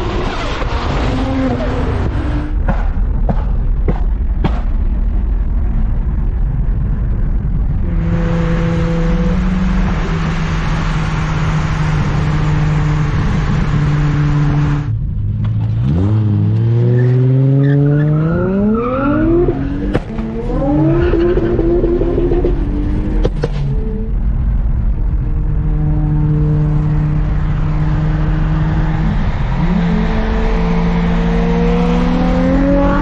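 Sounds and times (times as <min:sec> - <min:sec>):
car engine revving: 0:00.0 - 0:33.0.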